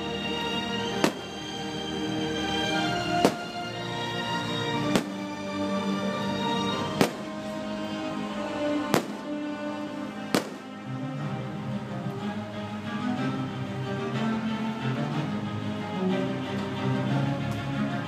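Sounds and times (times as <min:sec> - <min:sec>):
music playing: 0:00.0 - 0:18.0
firework bangs: 0:04.9 - 0:05.2, 0:07.0 - 0:07.4, 0:08.9 - 0:09.3, 0:10.3 - 0:10.7.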